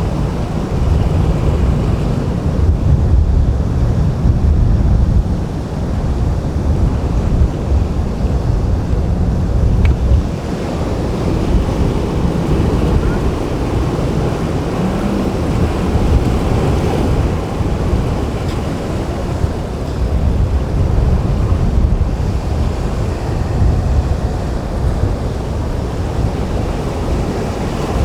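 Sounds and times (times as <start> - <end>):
waves breaking: 0.0 - 28.0
wind buffeting microphone: 0.0 - 28.0.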